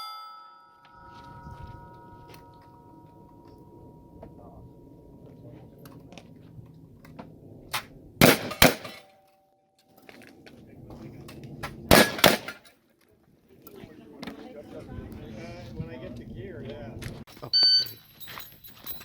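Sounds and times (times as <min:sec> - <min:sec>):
loud gunshots: 0:08.2 - 0:09.1, 0:11.9 - 0:12.6.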